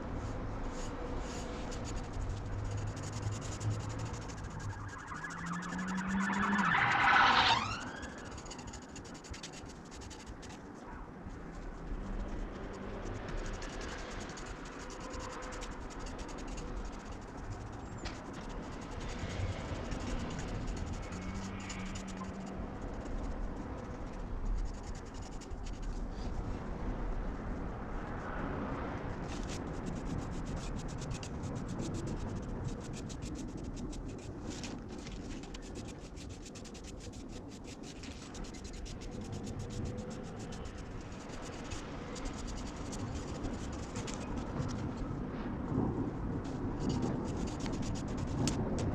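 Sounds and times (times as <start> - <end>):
scratching and rubbing on surface: 0.0 - 26.8, 27.4 - 45.1, 46.5 - 48.9
fine ticks: 1.3 - 7.0, 11.4 - 26.0, 29.2 - 44.9.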